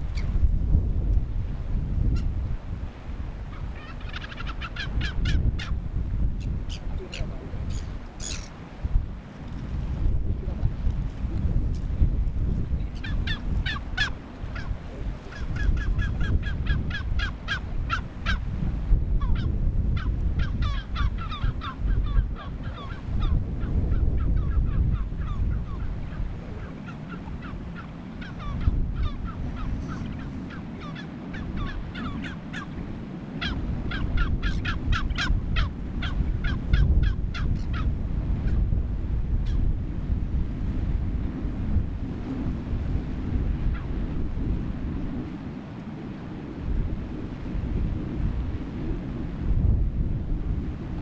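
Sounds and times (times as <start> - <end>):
wind rumble on microphone: 0.0 - 51.0
bird calling in rapid notes: 3.5 - 5.8, 6.4 - 8.5, 13.0 - 14.7, 24.2 - 32.8, 33.4 - 36.2.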